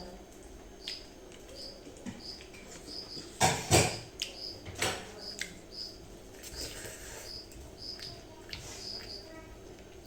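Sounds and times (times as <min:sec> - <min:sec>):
mouth chewing sounds: 0:05.2 - 0:09.2.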